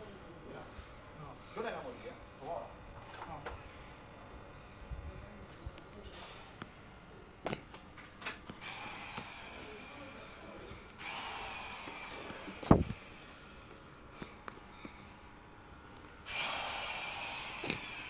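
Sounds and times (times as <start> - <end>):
small motor whining: 11.0 - 13.4, 16.2 - 18.0.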